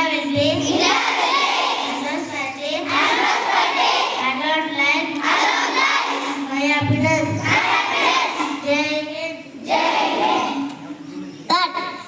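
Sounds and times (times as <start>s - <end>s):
children singing: 0.2s - 4.4s, 5.0s - 8.7s, 9.6s - 10.8s.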